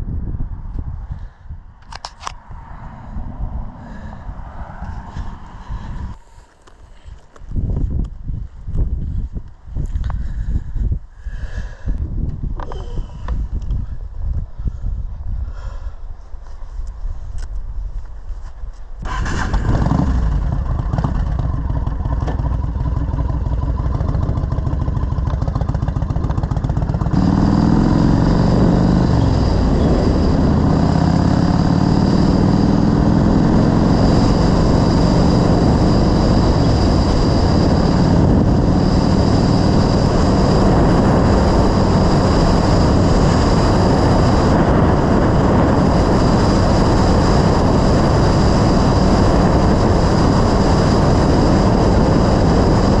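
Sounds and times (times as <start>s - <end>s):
wind noise: 0.0s - 53.0s
motorcycle engine: 19.0s - 53.0s.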